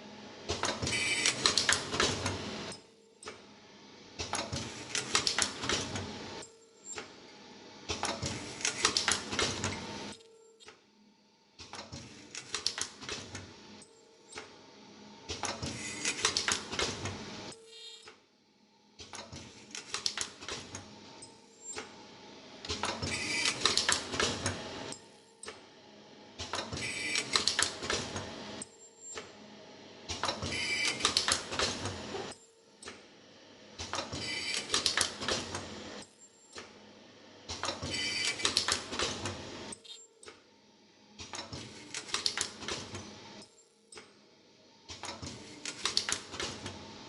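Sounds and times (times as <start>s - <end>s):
machine clattering clicks and knocks: 0.5s - 3.5s, 4.2s - 6.1s, 7.9s - 9.8s, 11.6s - 14.6s, 15.3s - 17.2s, 19.0s - 22.0s, 22.6s - 25.7s, 26.4s - 29.3s, 30.1s - 33.1s, 33.8s - 36.8s, 37.5s - 39.4s, 41.2s - 44.2s, 44.9s - 46.8s.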